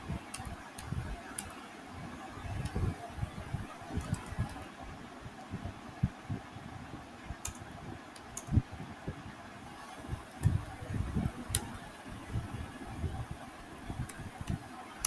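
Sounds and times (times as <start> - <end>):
computer keyboard typing: 0.0 - 5.5, 7.4 - 8.6, 9.8 - 15.0.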